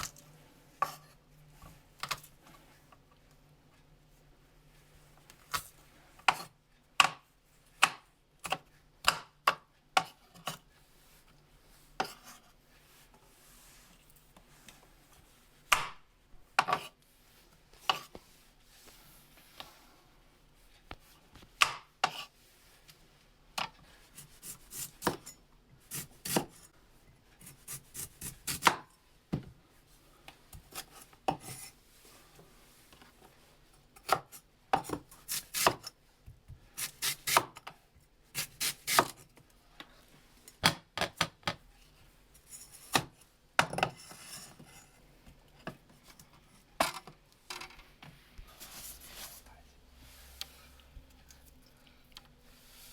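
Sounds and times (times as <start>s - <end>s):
knife chopping on cutting board: 25.9s - 26.6s, 34.0s - 35.9s, 36.8s - 37.5s, 38.4s - 39.2s.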